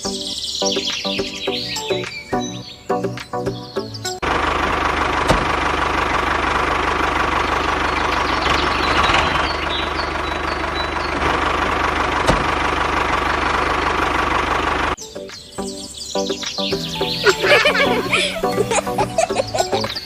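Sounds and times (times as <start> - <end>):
engine idling with knocking beat: 4.2 - 15.0, 17.3 - 20.0.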